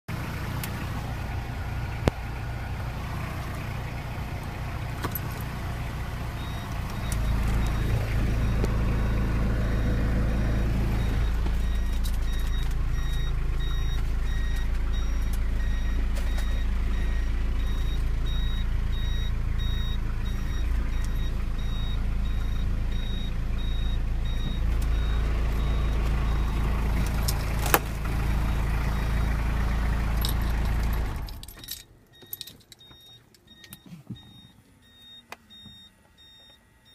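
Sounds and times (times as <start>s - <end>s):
car engine reversing: 0.1s - 36.9s
high-pitched reversing beeps: 6.3s - 26.7s, 32.2s - 36.9s.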